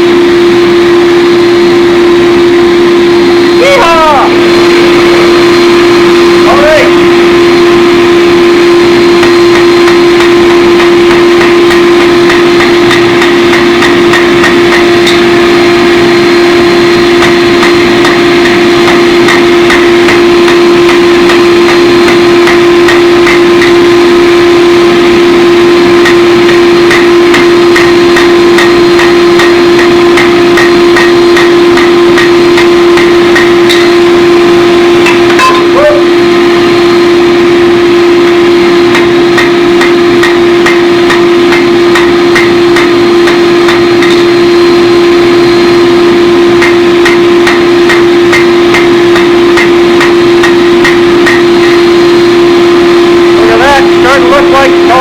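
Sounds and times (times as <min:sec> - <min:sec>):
hammer blows on hot steel: 0:00.0 - 0:55.0
shop machinery humming: 0:00.0 - 0:55.0.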